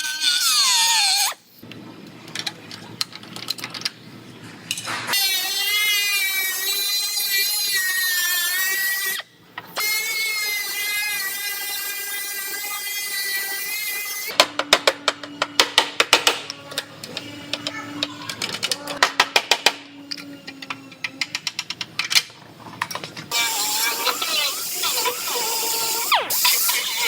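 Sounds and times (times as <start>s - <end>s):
cutting tool whining on sheet metal: 23.3s - 27.0s.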